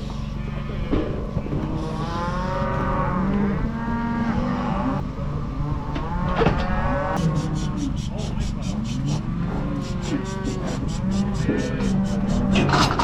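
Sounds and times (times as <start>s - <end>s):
steady low hum: 0.0s - 13.0s
cattle bawling: 5.9s - 13.0s.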